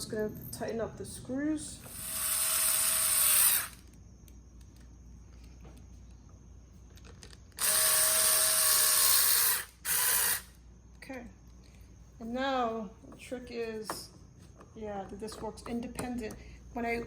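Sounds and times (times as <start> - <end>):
power drill whining: 1.8 - 3.9, 7.6 - 10.6.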